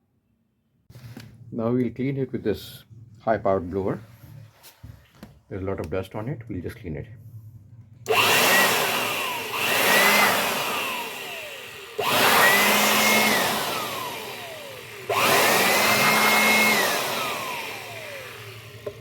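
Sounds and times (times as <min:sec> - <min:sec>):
electric air blower motor whine: 0:08.1 - 0:19.0.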